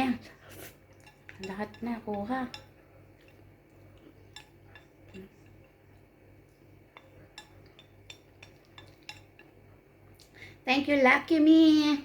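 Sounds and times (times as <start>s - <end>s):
cutlery clinking against a dish: 0.9s - 9.7s.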